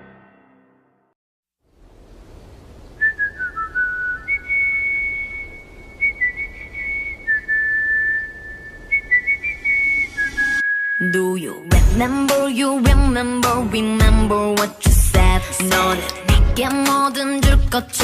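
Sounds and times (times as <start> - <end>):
person whistling a melody: 3.0 - 11.8.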